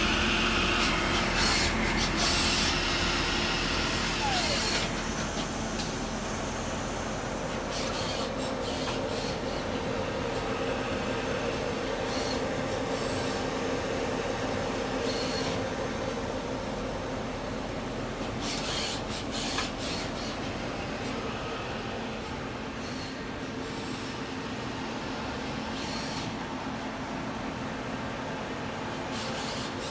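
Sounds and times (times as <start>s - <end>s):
lathe machine hum: 0.0s - 18.4s.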